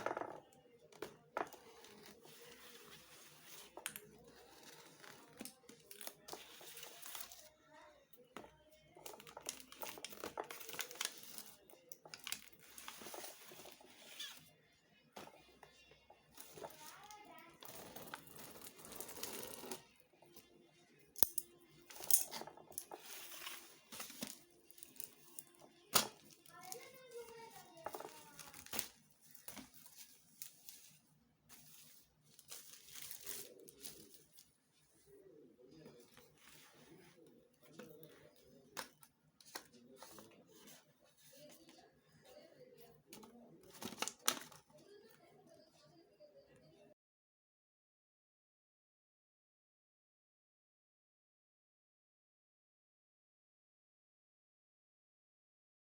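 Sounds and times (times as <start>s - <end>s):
plastic packaging crinkling: 9.0s - 14.4s, 22.0s - 34.5s.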